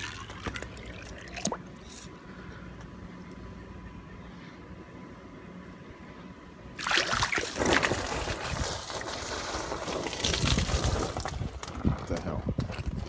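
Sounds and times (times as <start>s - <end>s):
water splashing and sloshing: 0.0s - 2.1s, 6.8s - 11.4s.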